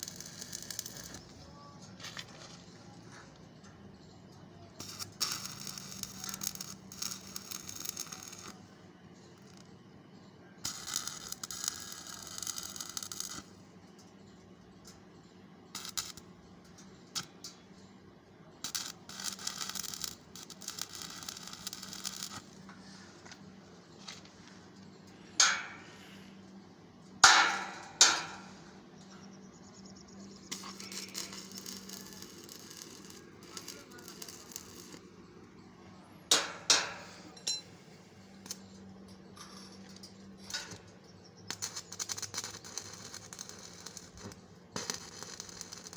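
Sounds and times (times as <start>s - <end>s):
arc welding crackling: 0.0s - 3.1s, 4.8s - 9.7s, 10.6s - 13.6s, 15.7s - 17.8s, 18.6s - 23.4s, 27.2s - 28.8s, 30.1s - 35.7s, 36.3s - 37.3s, 38.3s - 45.9s
steady low hum: 0.0s - 45.9s.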